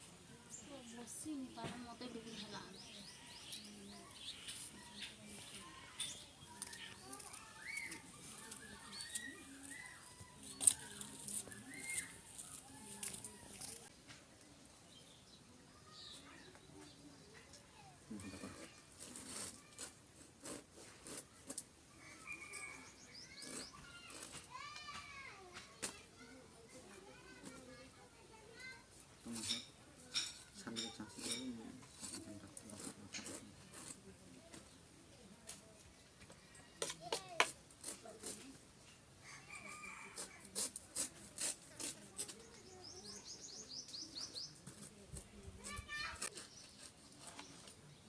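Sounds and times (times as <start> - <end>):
knife cutting fruit rind: 6.6 - 13.9, 36.8 - 38.6, 39.8 - 42.7
birds chirping: 42.3 - 44.9.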